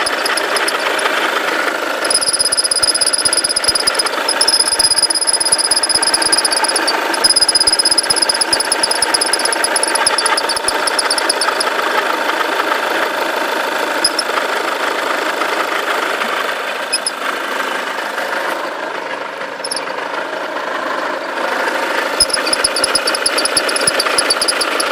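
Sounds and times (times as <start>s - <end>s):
high-pitched rapid chatter: 0.0s - 1.2s, 2.0s - 11.6s, 22.2s - 24.9s
diesel engine running: 0.0s - 24.9s.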